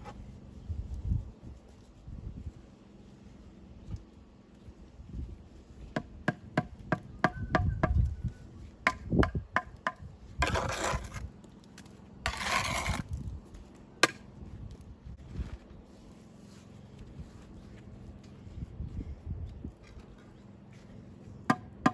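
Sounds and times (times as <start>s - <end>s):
rough scrapes on stone: 10.4s - 11.3s, 12.2s - 13.3s.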